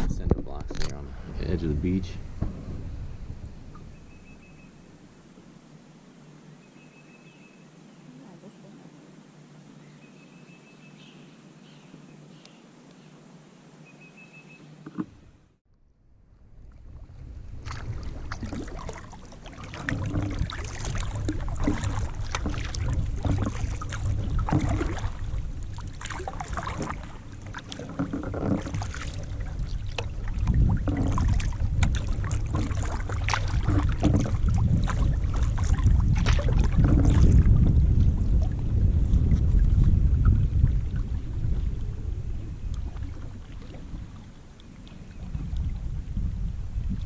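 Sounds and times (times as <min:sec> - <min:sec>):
wind buffeting microphone: 0:00.0 - 0:05.2, 0:16.5 - 0:47.0
paddle splashing water: 0:00.0 - 0:07.5, 0:16.3 - 0:47.0.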